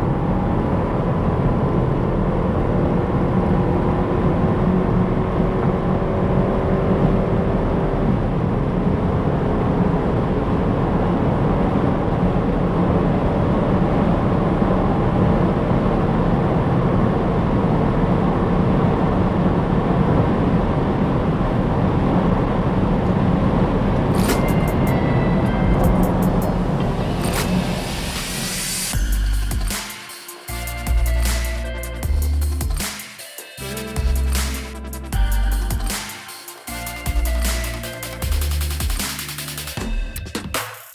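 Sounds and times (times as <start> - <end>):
car engine tyre and wind drone: 0.0 - 29.8.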